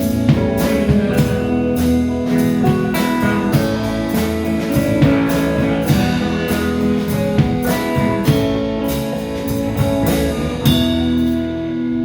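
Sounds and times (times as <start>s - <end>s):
band music led by guitar: 0.0s - 12.0s.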